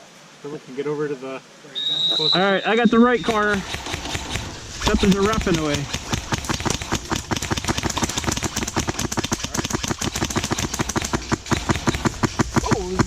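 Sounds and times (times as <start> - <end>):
airsoft gun rapid firing: 3.0 - 13.0.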